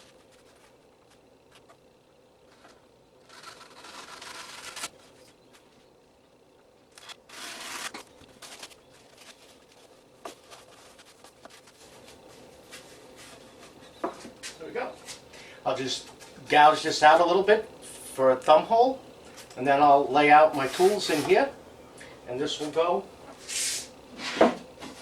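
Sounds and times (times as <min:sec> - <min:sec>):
foam tearing: 0:03.2 - 0:04.9.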